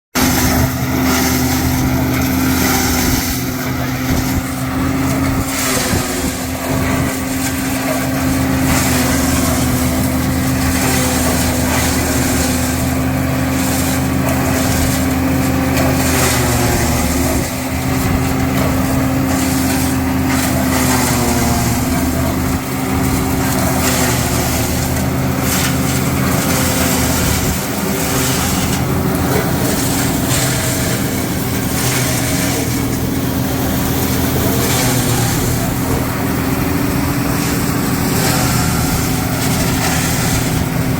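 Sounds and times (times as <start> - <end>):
harvester engine drone: 0.2 - 40.9.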